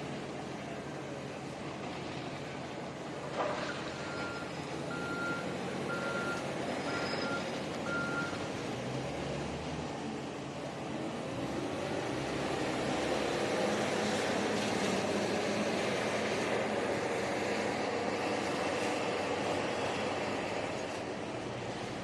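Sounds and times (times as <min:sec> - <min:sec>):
backup alarm beeping: 0:04.0 - 0:08.4.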